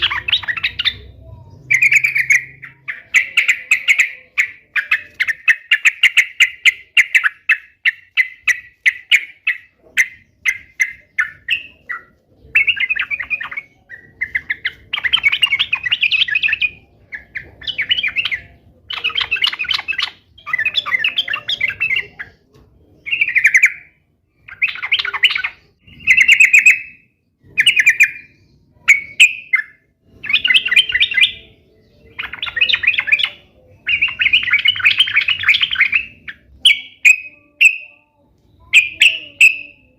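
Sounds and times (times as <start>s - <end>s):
bird calling: 0.0s - 22.4s, 38.6s - 39.9s.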